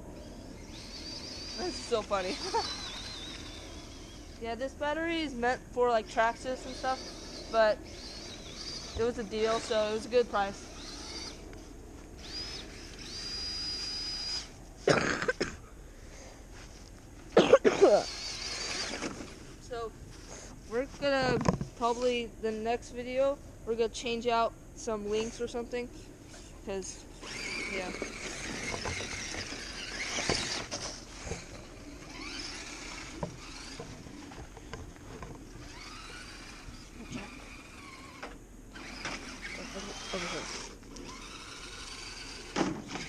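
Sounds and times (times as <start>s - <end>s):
electric motor whining: 0.0s - 14.8s, 17.9s - 23.1s, 24.9s - 43.0s
loud cough-like burst: 14.8s - 15.6s, 17.4s - 18.0s.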